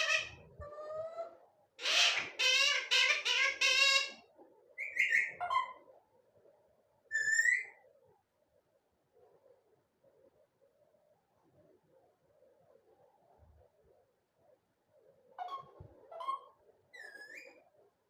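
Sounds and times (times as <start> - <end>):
parrot chattering: 0.0 - 1.2, 1.8 - 4.2
parrot whistled calls: 7.1 - 7.8.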